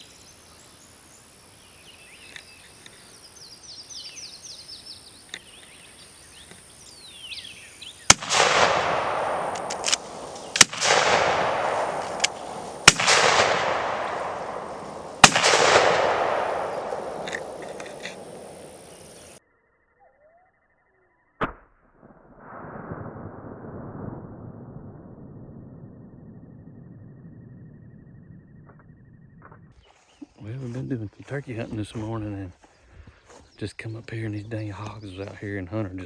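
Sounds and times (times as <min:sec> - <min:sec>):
gunshot echo: 0:08.1 - 0:19.4
shotgun blasts: 0:08.1 - 0:19.4.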